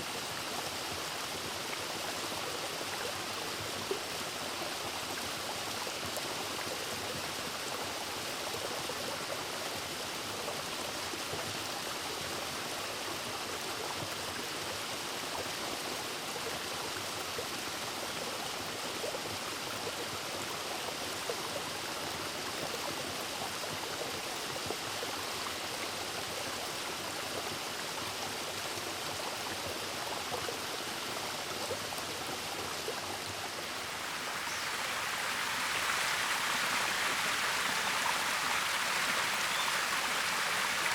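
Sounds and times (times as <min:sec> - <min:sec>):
stream and waterfall rushing: 0:24.8 - 0:40.9.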